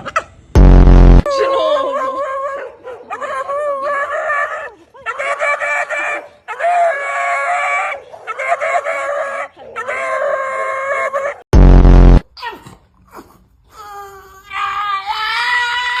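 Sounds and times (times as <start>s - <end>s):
dog howling calls: 1.8s - 11.4s.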